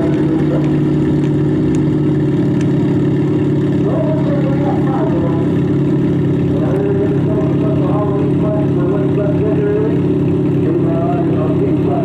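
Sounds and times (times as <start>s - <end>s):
car engine running: 0.0s - 12.0s
faint voices: 3.8s - 5.8s.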